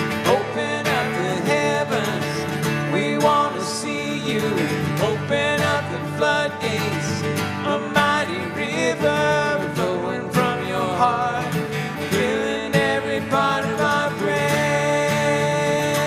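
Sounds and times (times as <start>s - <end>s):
live worship band playing: 0.0s - 16.0s.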